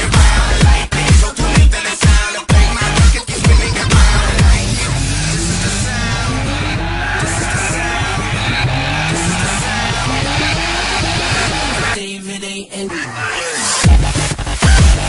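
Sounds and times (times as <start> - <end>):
steady low bass: 0.0 - 1.6, 2.5 - 12.0
kick drum: 0.0 - 4.9, 13.9 - 15.0
rising synth sweeps: 3.9 - 12.0.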